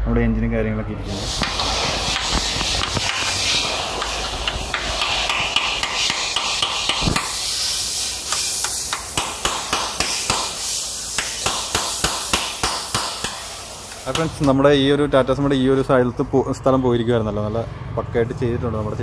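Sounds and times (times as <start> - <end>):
grinding hiss: 1.0 - 14.6
hammering on metal: 4.0 - 7.4, 8.3 - 13.5.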